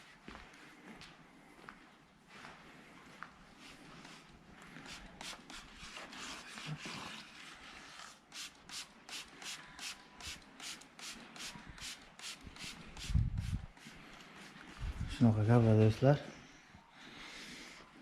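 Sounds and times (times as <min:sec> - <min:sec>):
rubbing strokes on a surface: 0:03.6 - 0:16.0.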